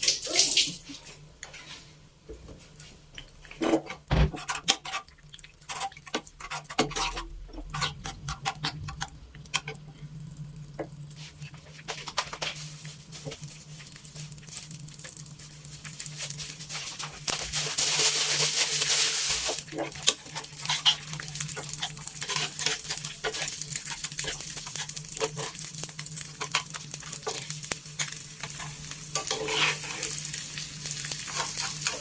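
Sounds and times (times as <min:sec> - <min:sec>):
low steady hum: 0:06.2 - 0:12.0.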